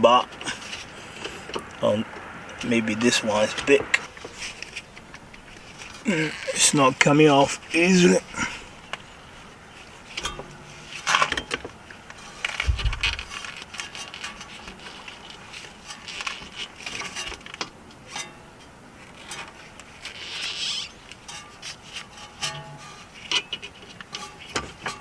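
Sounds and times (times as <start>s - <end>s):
metal clicks and scraping: 10.1s - 18.4s, 19.1s - 25.0s
dull thump: 12.6s - 13.4s.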